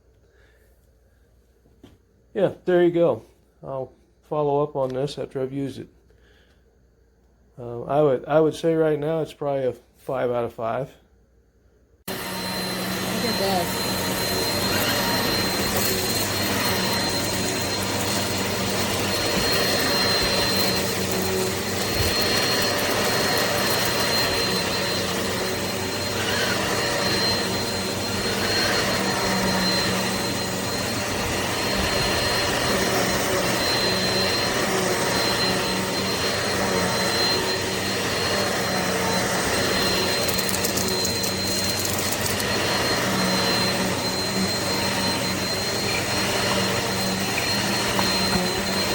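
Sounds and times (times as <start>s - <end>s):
vacuum cleaner running: 12.0s - 48.9s.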